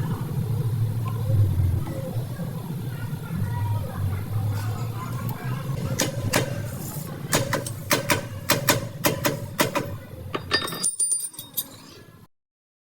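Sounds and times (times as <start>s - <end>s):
sharp knocks and clinks: 7.3s - 11.9s.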